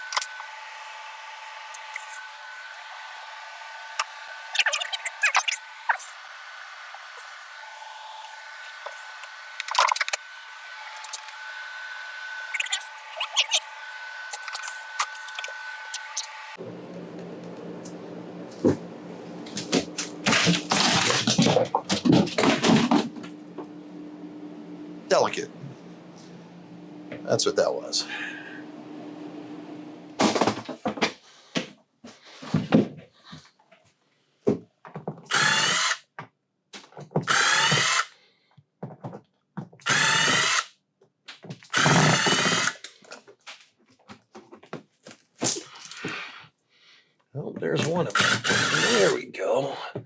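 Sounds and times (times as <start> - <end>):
power drill running: 0.0 - 16.6, 35.3 - 36.0, 37.2 - 38.2, 39.8 - 40.7, 41.7 - 42.8, 48.1 - 49.2
panels cracking and banging: 19.4 - 23.3, 30.2 - 31.2.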